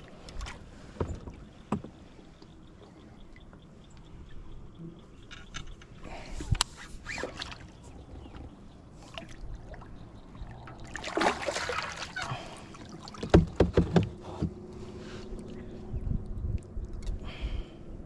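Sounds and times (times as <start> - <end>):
kayak splashing in water: 10.8 - 14.5.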